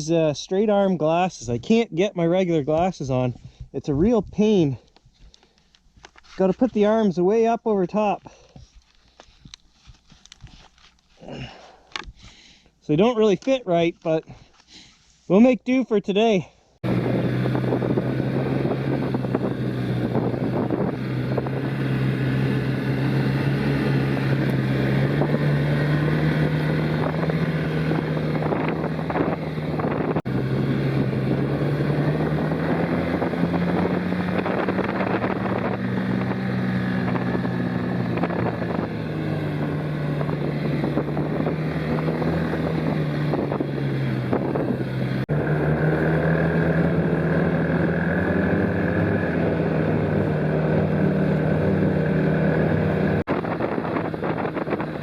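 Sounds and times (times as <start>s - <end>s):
wind on microphone: 16.8s - 23.2s, 23.9s - 55.0s
snowmobile engine running: 16.8s - 55.0s.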